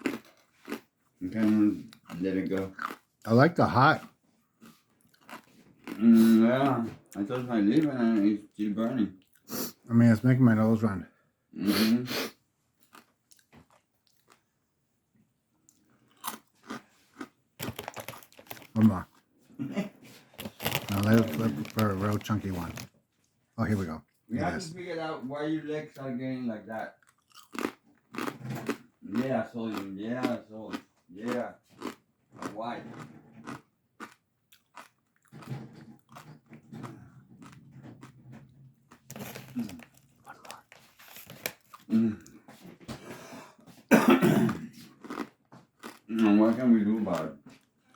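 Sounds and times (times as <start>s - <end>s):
person chewing crunchy chips: 0.0s - 8.3s, 12.8s - 14.5s, 15.7s - 19.2s, 20.1s - 22.9s, 27.0s - 42.4s, 44.5s - 47.6s.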